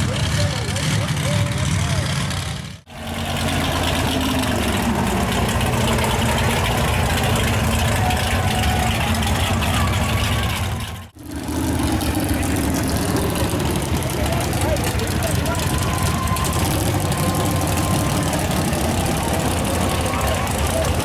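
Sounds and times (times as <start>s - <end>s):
truck engine idling: 0.0s - 21.0s.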